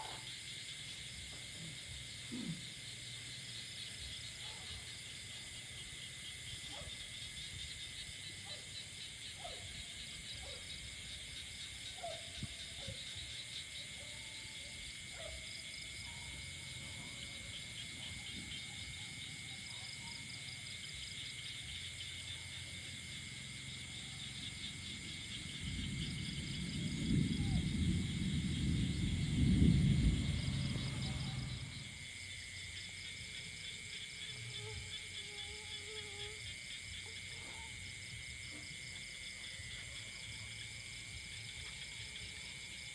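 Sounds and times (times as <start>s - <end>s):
crickets trilling: 0.0s - 42.9s
short insect calls: 22.3s - 32.0s
low rumbling noise: 24.9s - 32.1s.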